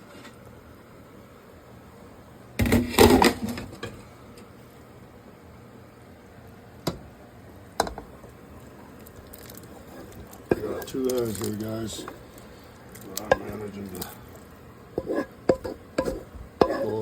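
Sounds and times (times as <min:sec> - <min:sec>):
vegetables scraped from a pan: 0:08.2 - 0:17.0
cookware clattering: 0:10.5 - 0:11.0, 0:13.2 - 0:13.6, 0:15.0 - 0:17.0.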